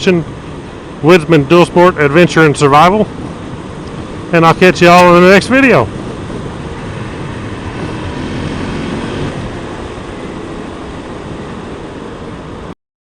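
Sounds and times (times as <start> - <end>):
wind rush: 0.0 - 12.7
motorcycle engine running: 5.9 - 12.0.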